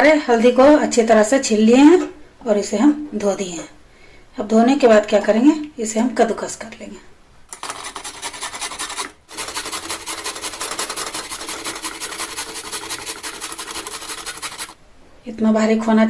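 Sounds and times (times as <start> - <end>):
root grated on a grater: 7.5 - 14.8.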